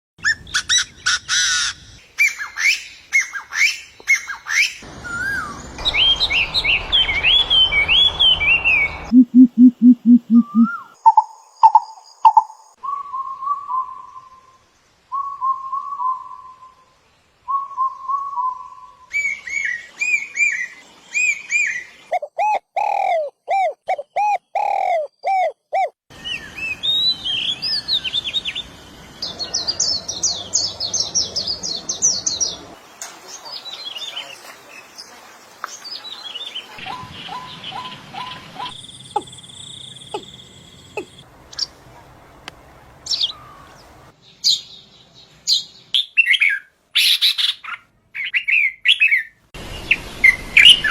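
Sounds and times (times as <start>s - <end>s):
fast high bird chirps: 2.2s - 12.5s, 36.8s - 41.7s, 45.5s - 49.4s
whistled bird phrases: 2.2s - 21.9s, 35.8s - 41.2s
downslurred whistles: 5.0s - 11.0s
low hoots: 5.9s - 10.9s.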